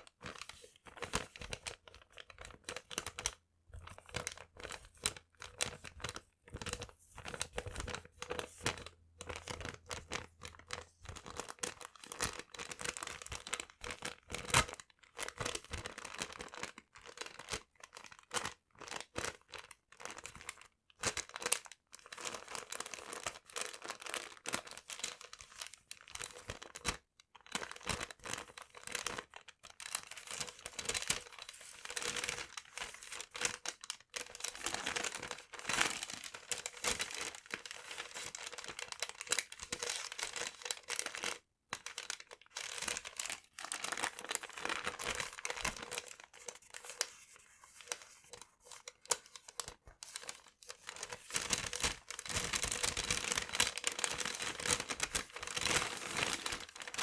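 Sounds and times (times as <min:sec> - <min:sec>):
paper crinkling: 0:28.4 - 0:57.0.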